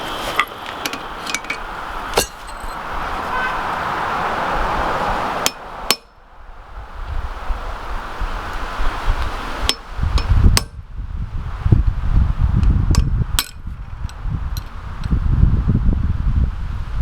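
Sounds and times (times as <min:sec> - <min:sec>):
hammer striking steel on anvil: 0:02.2 - 0:02.8, 0:05.4 - 0:06.2, 0:13.4 - 0:13.6.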